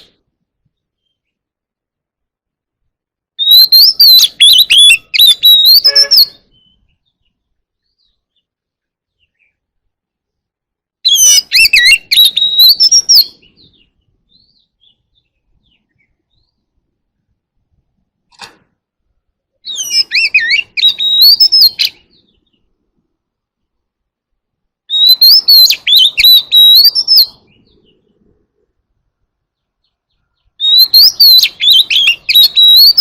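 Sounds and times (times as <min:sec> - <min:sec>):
bird singing whistles: 0:03.4 - 0:08.5, 0:11.0 - 0:16.6, 0:19.6 - 0:22.6, 0:24.9 - 0:27.8, 0:30.1 - 0:33.0.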